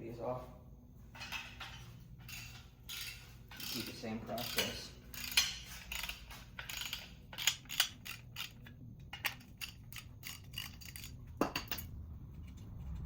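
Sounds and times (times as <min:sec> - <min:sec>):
ratchet wrench clicking: 0:02.3 - 0:11.2.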